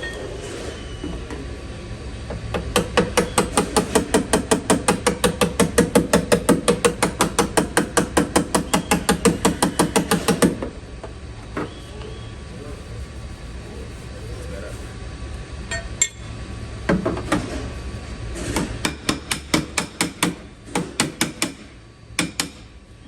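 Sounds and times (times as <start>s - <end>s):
hammer tapping on sheet metal: 2.5s - 10.6s, 18.5s - 21.6s, 22.2s - 22.6s.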